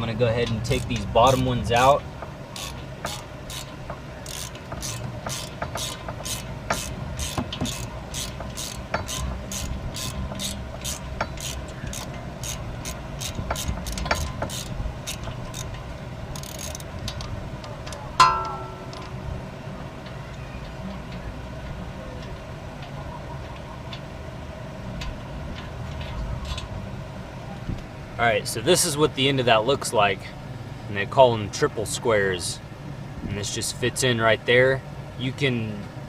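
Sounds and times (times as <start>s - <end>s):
hand ratchet clicking: 0.6s - 1.5s, 2.6s - 17.2s
sharp metal clink: 18.2s - 19.2s.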